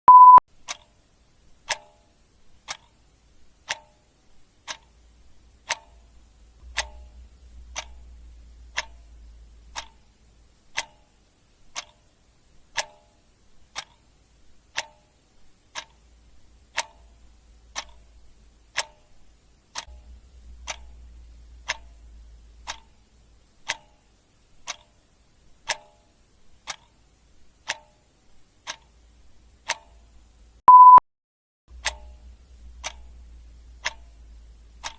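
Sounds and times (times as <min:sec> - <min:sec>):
clock ticking: 0:00.1 - 0:30.3, 0:31.7 - 0:34.9
faint low rumble: 0:04.8 - 0:10.9, 0:16.0 - 0:23.8, 0:31.7 - 0:34.9.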